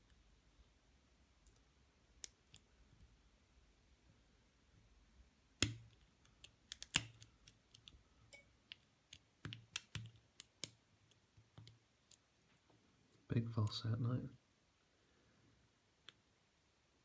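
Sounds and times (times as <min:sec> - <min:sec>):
lock pick clicking in padlock: 0:05.6 - 0:07.9, 0:09.1 - 0:10.7.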